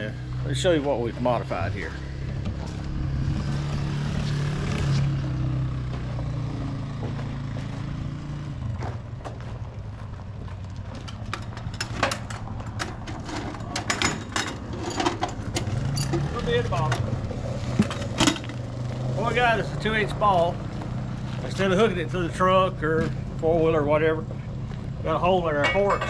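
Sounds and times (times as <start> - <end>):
tractor engine running: 0.0 - 26.0
sharp clicks and clanks: 10.8 - 17.1.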